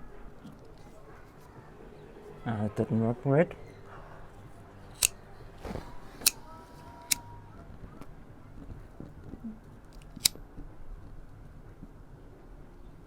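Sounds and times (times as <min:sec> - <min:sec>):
cigar cutter snapping shut: 0:05.0 - 0:07.2, 0:10.0 - 0:10.4.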